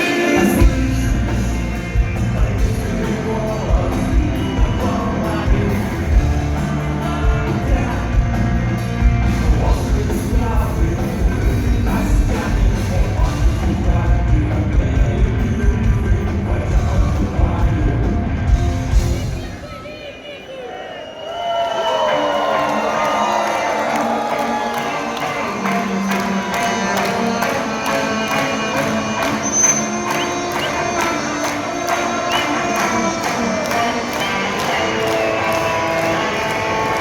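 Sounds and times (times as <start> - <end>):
heavy drum beat: 0.0 - 19.5
rock band playing: 0.0 - 19.7, 22.8 - 37.0
person singing: 0.0 - 20.6, 22.8 - 37.0.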